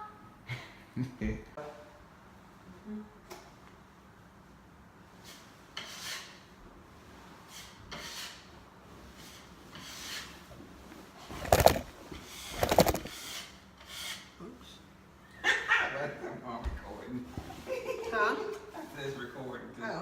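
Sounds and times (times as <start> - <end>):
rubbing scraping strokes: 11.3 - 14.3.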